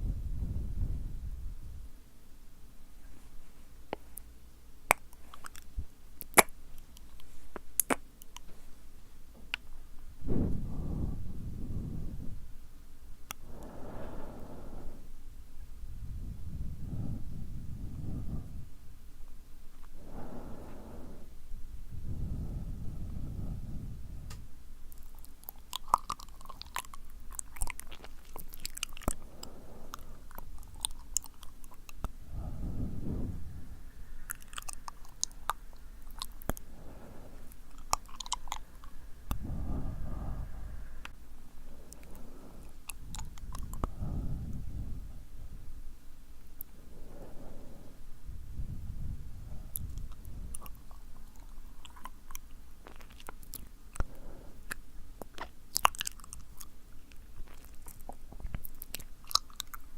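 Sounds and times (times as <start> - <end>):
wet tongue and lip clicks: 3.9 - 8.6, 9.4 - 9.8, 13.2 - 13.7, 24.3 - 32.6, 34.2 - 40.3, 41.9 - 44.7, 49.5 - 59.9
breath blown into microphone: 10.2 - 12.5, 13.4 - 15.2, 15.9 - 18.8, 20.0 - 24.4, 32.2 - 35.5, 36.6 - 45.7.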